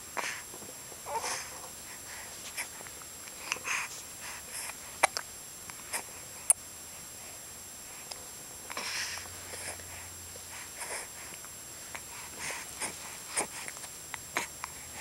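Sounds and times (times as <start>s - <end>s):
soft breathy sniffs: 1.1s - 5.1s, 8.7s - 15.0s.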